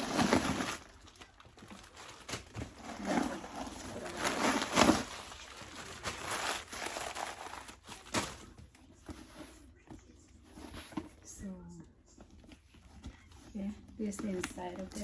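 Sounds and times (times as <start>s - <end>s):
bag rustling: 0.0s - 8.5s.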